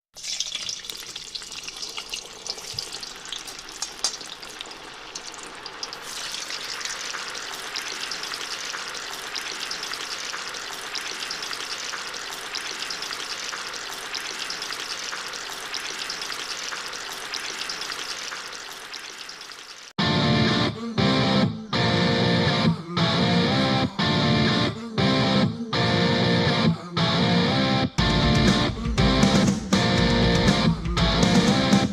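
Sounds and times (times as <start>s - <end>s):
pops and crackles of frying: 0.2s - 20.0s
sausages sizzling in a pan: 0.7s - 19.9s
loud music: 20.0s - 31.9s.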